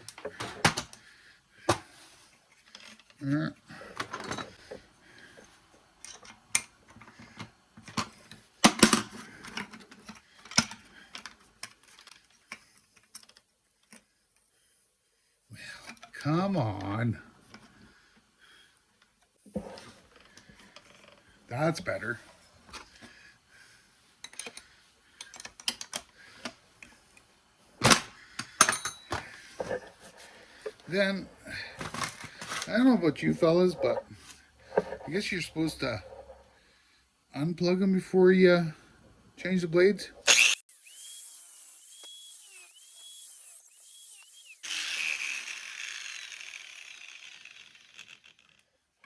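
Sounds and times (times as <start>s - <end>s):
tools and metal parts clicking: 28.6s - 29.9s.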